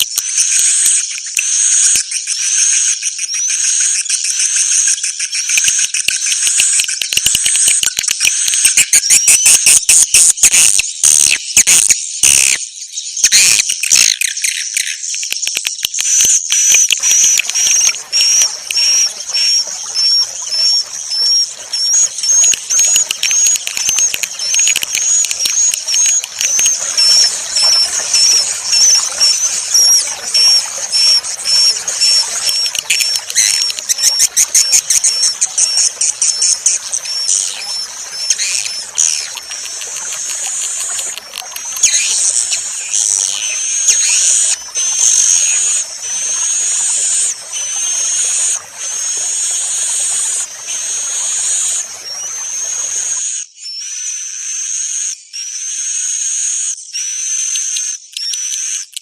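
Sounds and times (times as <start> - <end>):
high-pitched bird chirps: 8.3 - 54.2.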